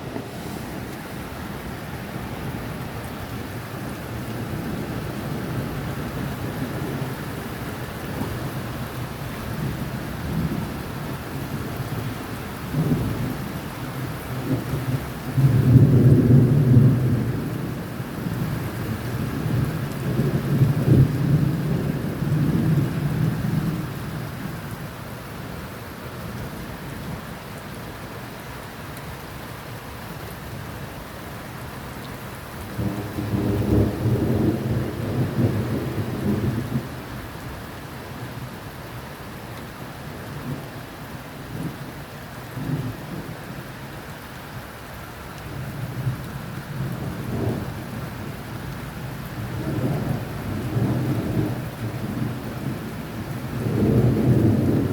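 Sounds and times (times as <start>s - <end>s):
steady rain: 0.0s - 54.9s
thunder rumbling: 32.7s - 37.0s, 49.4s - 54.9s.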